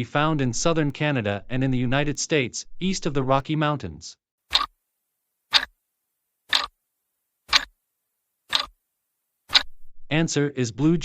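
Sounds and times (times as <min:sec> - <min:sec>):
clock ticks: 0:04.5 - 0:04.7, 0:05.5 - 0:05.7, 0:06.5 - 0:06.7, 0:07.5 - 0:07.7, 0:08.5 - 0:08.8, 0:09.5 - 0:09.8.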